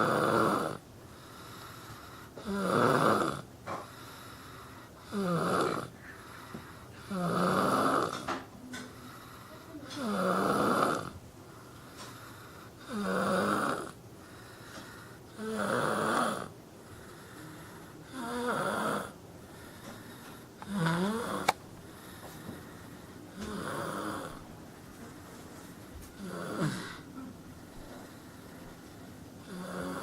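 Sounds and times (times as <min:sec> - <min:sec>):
boy snoring: 0:00.0 - 0:01.6, 0:02.4 - 0:06.4, 0:07.0 - 0:11.2, 0:12.4 - 0:14.0, 0:15.3 - 0:16.5, 0:17.1 - 0:19.2, 0:19.9 - 0:21.6, 0:23.3 - 0:24.4, 0:26.2 - 0:27.1, 0:29.4 - 0:30.0.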